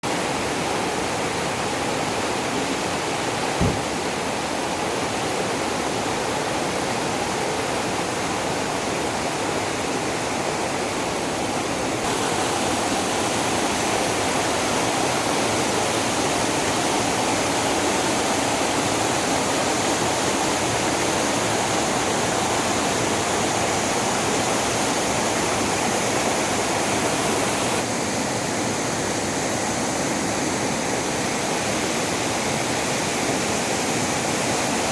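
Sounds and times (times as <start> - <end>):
water rushing over waterfall: 0.1 - 34.9
brief knock: 3.6 - 4.0.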